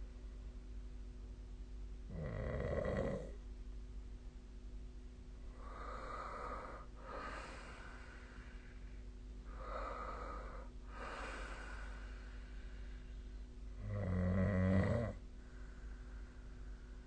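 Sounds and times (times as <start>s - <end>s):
person breathing heavily: 5.5s - 13.5s, 15.4s - 17.0s.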